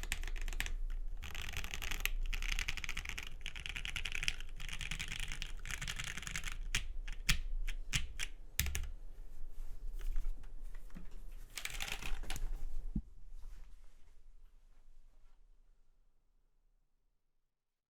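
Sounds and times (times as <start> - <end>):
typing on mechanical keyboard: 0.0 - 9.0, 11.5 - 12.5.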